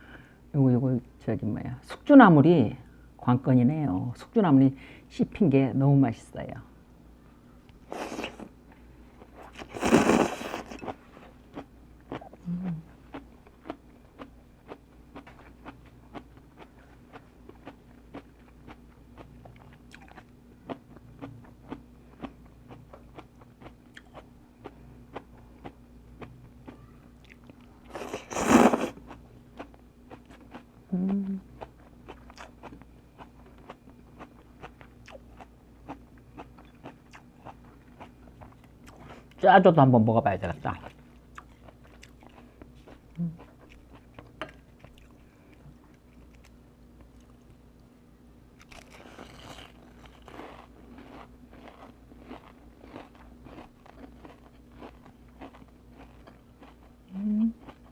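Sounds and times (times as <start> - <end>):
chewing and crunching noodles: 9.2 - 12.4, 13.0 - 39.4, 40.7 - 47.5, 48.6 - 57.9.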